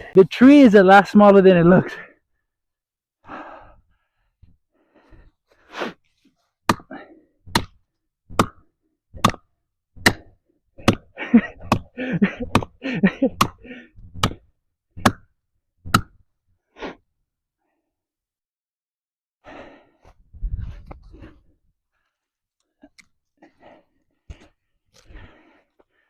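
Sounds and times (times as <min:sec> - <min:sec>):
person speaking: 0:00.0 - 0:02.1.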